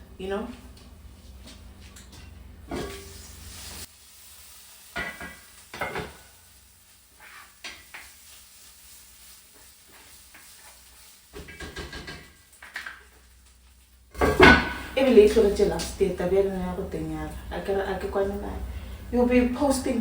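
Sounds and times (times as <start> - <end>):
faint sizzle: 0.0 - 20.0
utensil scraping a pot: 7.1 - 8.0.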